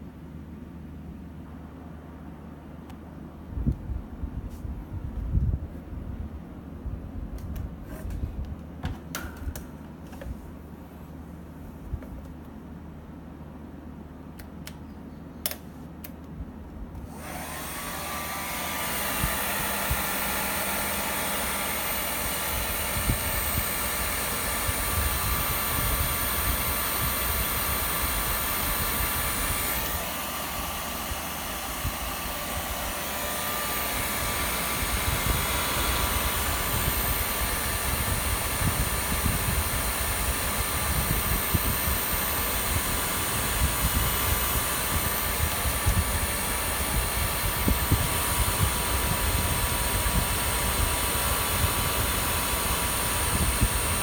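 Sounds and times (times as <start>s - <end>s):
electric blower whining: 17.0s - 54.0s.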